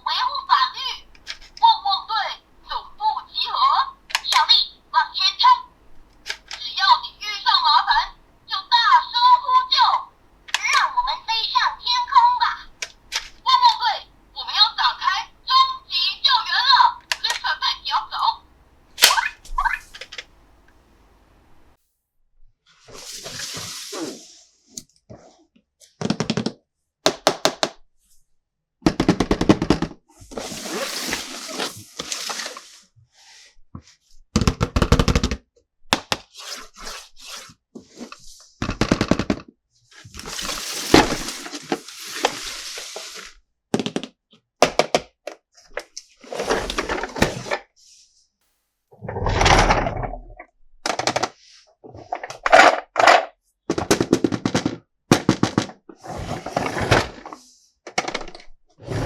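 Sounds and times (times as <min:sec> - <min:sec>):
plastic toy parts clicking: 0:01.1 - 0:01.6, 0:04.1 - 0:04.5, 0:06.1 - 0:06.6, 0:12.8 - 0:13.4, 0:17.0 - 0:17.5, 0:19.0 - 0:20.3
rustling: 0:30.2 - 0:32.9, 0:39.9 - 0:43.4.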